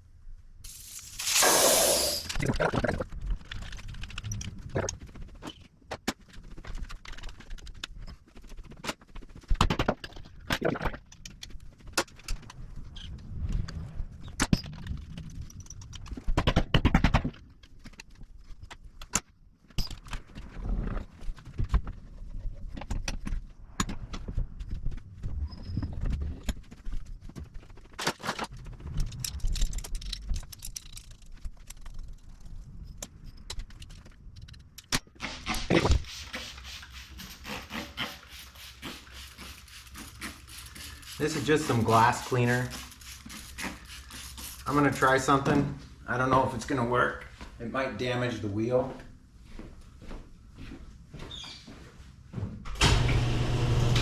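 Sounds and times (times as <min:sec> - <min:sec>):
steady hiss: 0:00.6 - 0:02.3, 0:35.2 - 0:45.3.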